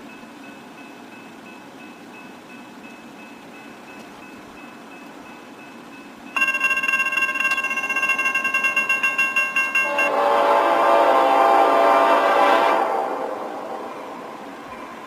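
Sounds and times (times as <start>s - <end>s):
railway crossing bell: 0.0s - 10.6s, 13.9s - 15.0s
locomotive air horn: 8.8s - 13.7s.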